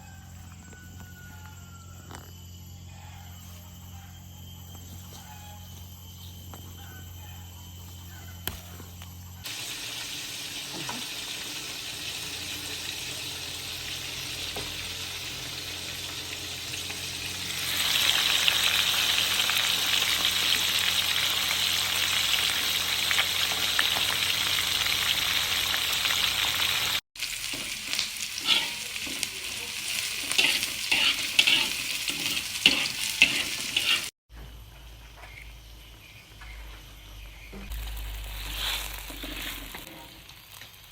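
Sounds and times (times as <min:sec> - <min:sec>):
food sizzling in oil: 0:09.4 - 0:34.2, 0:37.7 - 0:40.9
oil crackling and popping: 0:09.5 - 0:34.1, 0:37.7 - 0:40.9.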